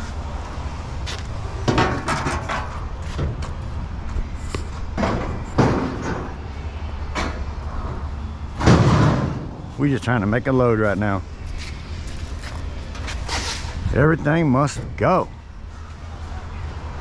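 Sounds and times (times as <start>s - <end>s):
scrap metal clanking: 1.6s - 3.5s, 12.9s - 14.0s.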